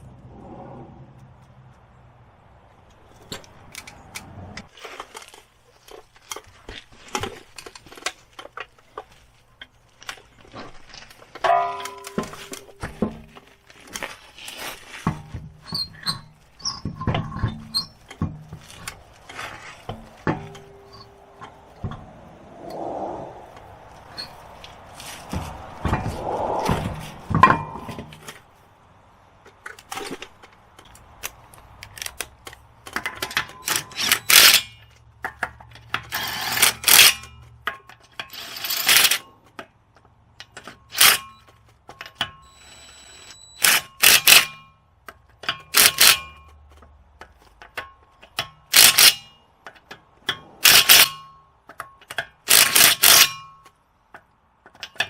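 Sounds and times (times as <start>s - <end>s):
metal tools clanking: 11.4s - 13.4s.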